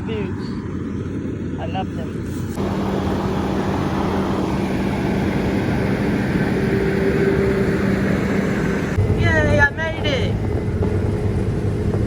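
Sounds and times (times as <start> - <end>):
combine harvester running: 0.8 - 12.0.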